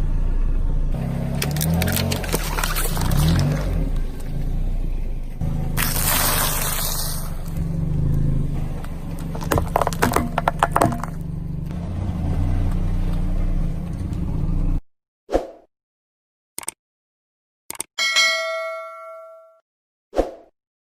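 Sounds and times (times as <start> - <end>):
car engine running: 0.0 - 14.8
tyres crunching brittle debris: 1.3 - 4.3, 5.8 - 7.6, 9.1 - 11.3.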